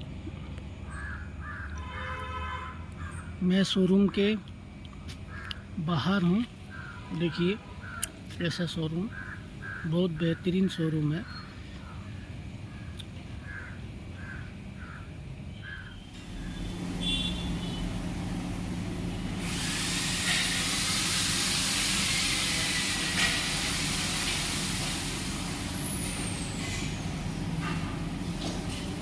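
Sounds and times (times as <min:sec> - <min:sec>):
low mechanical hum: 0:00.0 - 0:29.0
crow cawing: 0:00.9 - 0:02.0, 0:05.3 - 0:05.7, 0:06.7 - 0:07.2, 0:07.8 - 0:08.2, 0:09.1 - 0:10.4, 0:13.4 - 0:16.0
loud hiss: 0:16.2 - 0:29.0.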